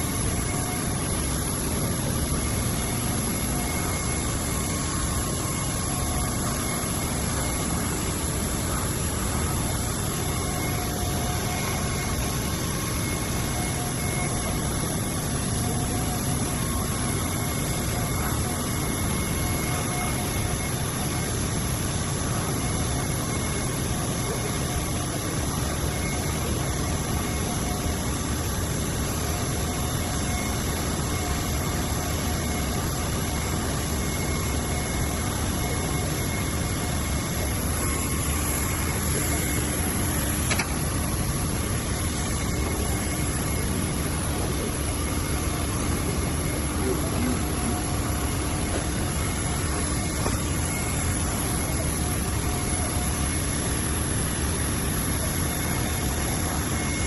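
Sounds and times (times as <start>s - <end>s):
machine running with hiss: 0.0s - 57.0s.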